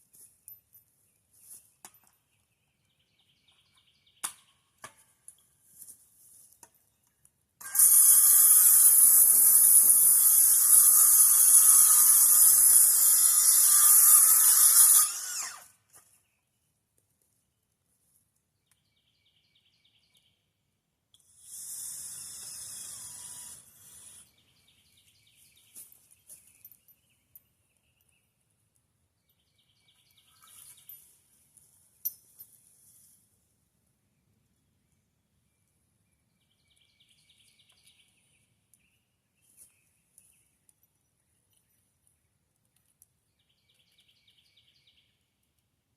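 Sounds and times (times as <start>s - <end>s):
power drill running: 7.6s - 15.8s, 21.3s - 24.4s.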